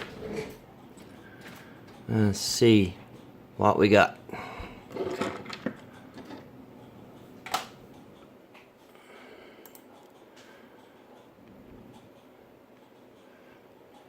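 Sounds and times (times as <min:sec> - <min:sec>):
computer fan hiss: 0:02.1 - 0:04.5.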